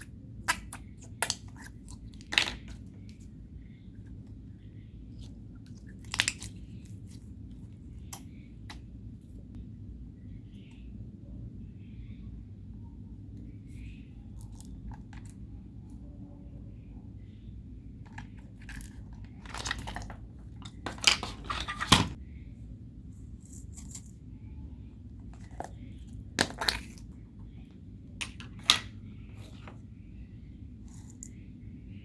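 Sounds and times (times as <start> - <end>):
low steady hum: 0.0 - 32.0.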